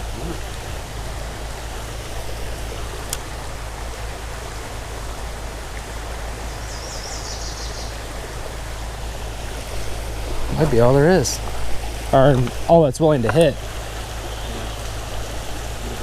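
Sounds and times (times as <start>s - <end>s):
creek flowing: 0.0s - 16.0s.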